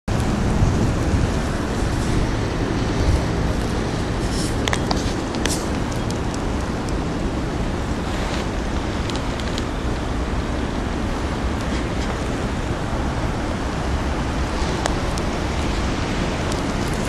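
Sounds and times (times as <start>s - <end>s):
blizzard wind blowing: 0.1s - 17.0s.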